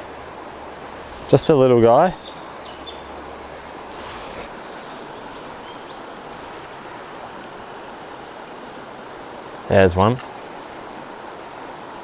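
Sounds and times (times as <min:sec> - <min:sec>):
stream water rushing: 0:00.0 - 0:12.0.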